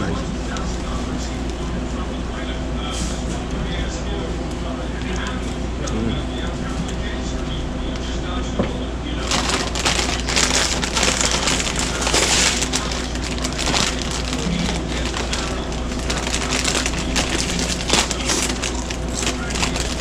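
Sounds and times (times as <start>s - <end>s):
faint steady hum: 0.0s - 20.0s
crunching sandwich eating: 9.2s - 20.0s
paper wrapper crinkling: 9.2s - 20.0s.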